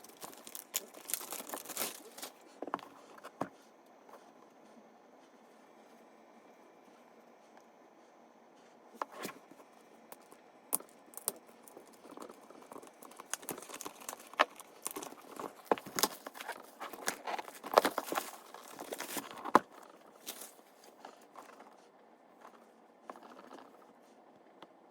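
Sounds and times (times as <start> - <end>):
packaging rustling and crinkling: 0.0 - 3.4, 10.2 - 21.7.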